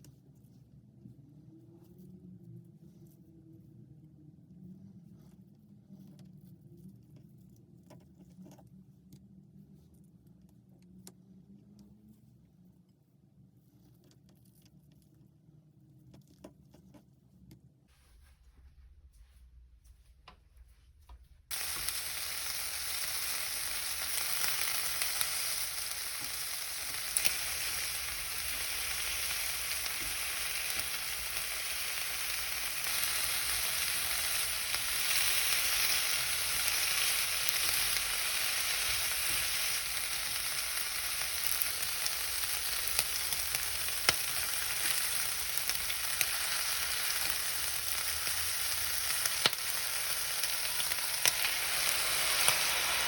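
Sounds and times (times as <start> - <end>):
food sizzling in a pan: 21.5 - 53.0.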